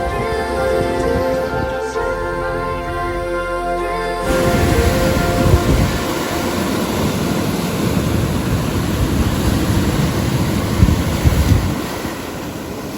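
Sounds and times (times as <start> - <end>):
wind buffeting microphone: 0.0 - 2.2, 4.3 - 12.9
ocean surf rushing: 4.2 - 12.9.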